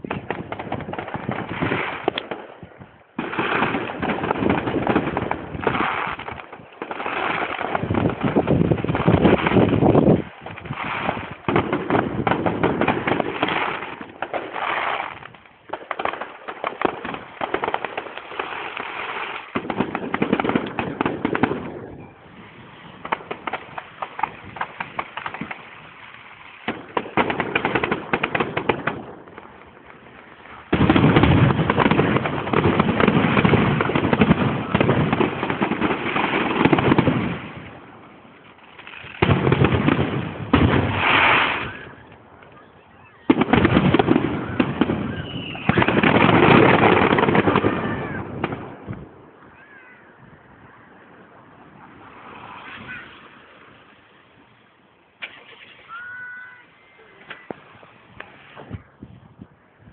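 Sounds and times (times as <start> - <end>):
fireworks bangs and crackling: 0.0 - 59.9.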